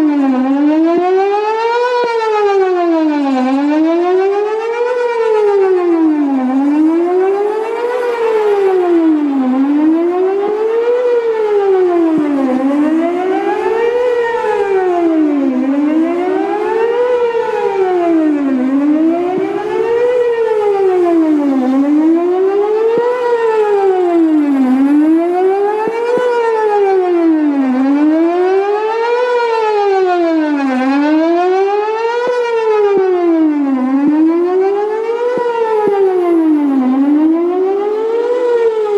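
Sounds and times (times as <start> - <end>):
warning siren sweeping: 0.0 - 38.9.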